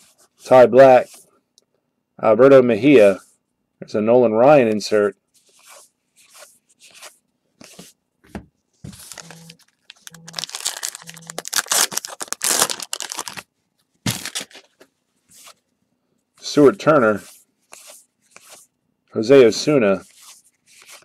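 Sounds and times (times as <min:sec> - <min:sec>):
card handling rustles: 0:08.8 - 0:15.6
foil wrapper tearing and crinkling: 0:09.0 - 0:13.5, 0:14.1 - 0:14.7.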